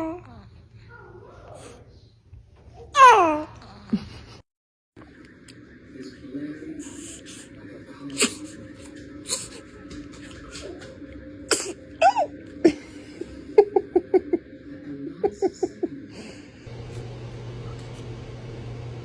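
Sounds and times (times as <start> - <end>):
baby sneezing: 8.1 - 8.6, 11.5 - 12.3.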